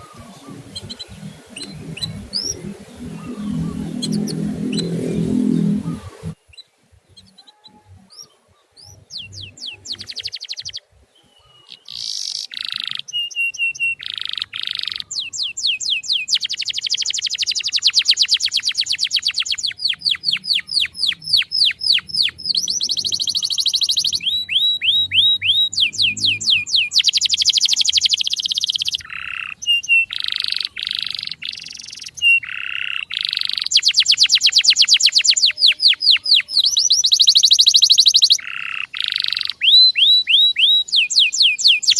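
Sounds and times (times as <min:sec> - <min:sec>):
canary singing trills: 0:00.0 - 0:41.9.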